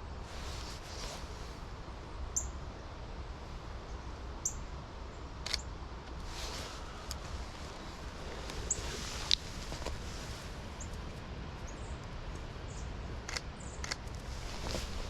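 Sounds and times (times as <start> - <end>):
low rumble of wind: 0.0 - 15.0
sharp click: 5.4 - 5.6.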